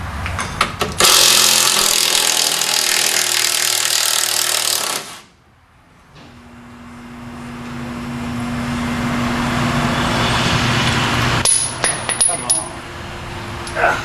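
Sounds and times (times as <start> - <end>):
power wrench running: 1.0 - 5.3.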